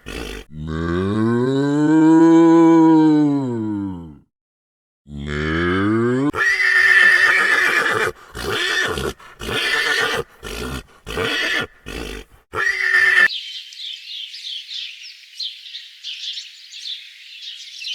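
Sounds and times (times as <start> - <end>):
large animal calling: 5.1 - 13.3.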